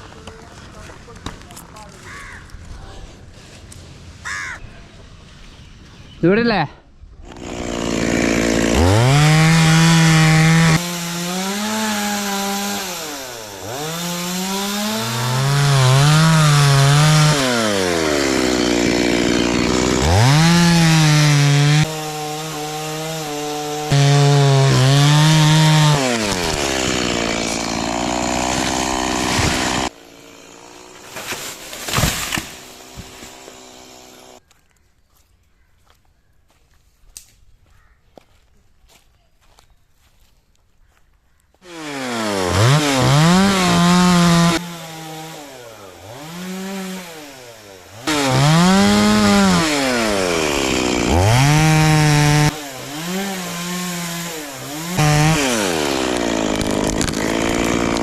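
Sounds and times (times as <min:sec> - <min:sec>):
chainsaw cutting wood: 0:07.2 - 0:34.4, 0:41.6 - 0:58.0.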